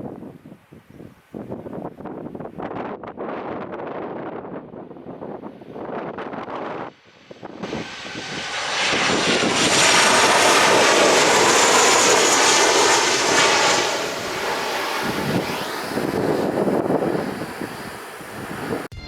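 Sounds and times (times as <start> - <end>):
aircraft engines passing: 5.5 - 18.9.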